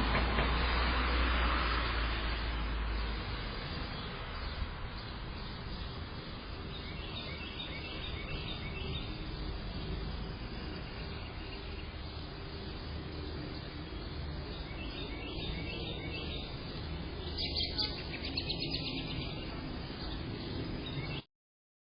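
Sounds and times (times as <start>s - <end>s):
outdoor background noise: 0.0s - 21.2s
birds chirping rapidly: 2.6s - 21.2s.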